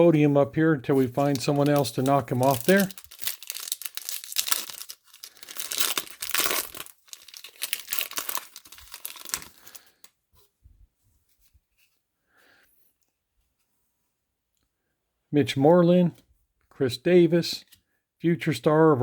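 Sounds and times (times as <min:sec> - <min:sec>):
wrapper tearing and crinkling: 0:01.0 - 0:10.1.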